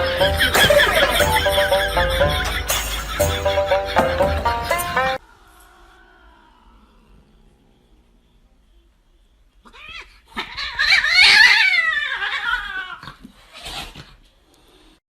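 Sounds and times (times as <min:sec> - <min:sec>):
pet animal quavering cry: 0:09.6 - 0:14.0.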